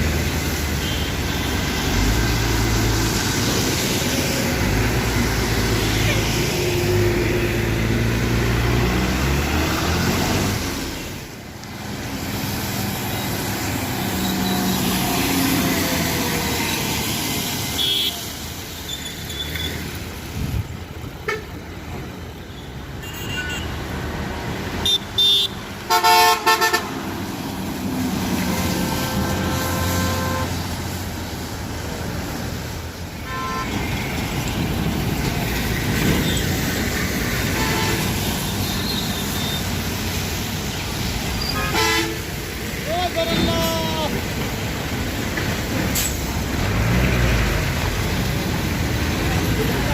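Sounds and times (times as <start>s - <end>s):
bus engine and road rumble: 0.0s - 49.9s
vehicle horns honking: 17.8s - 18.2s, 23.0s - 23.7s, 24.8s - 27.0s, 28.6s - 30.6s, 33.2s - 33.8s, 37.5s - 39.6s, 41.4s - 42.3s.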